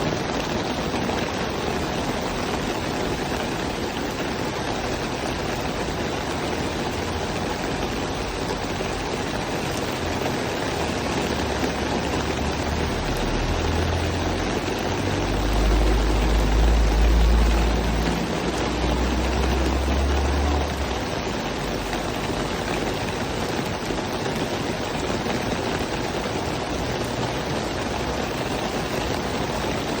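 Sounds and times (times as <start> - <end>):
steady rain hiss: 0.0 - 30.0.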